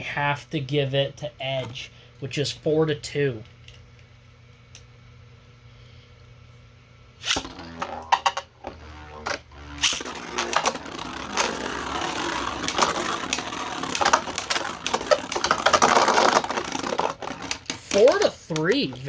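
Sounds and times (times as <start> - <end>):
spinning tops whirring: 7.2 - 19.0
tops clattering and clicking: 9.9 - 19.0.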